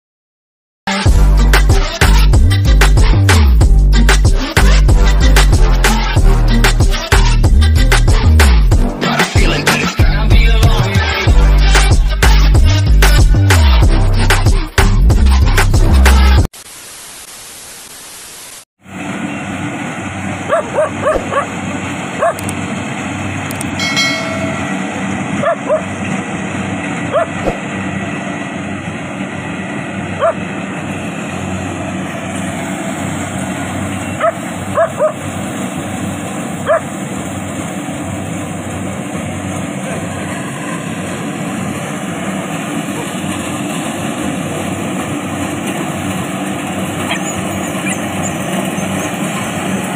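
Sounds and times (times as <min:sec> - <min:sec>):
combine harvester running: 0:18.8 - 0:49.9
dog barking: 0:20.5 - 0:21.5, 0:22.2 - 0:22.5, 0:25.4 - 0:25.9, 0:27.1 - 0:27.5, 0:30.2 - 0:30.4, 0:34.2 - 0:35.2, 0:36.6 - 0:36.9, 0:47.1 - 0:48.0.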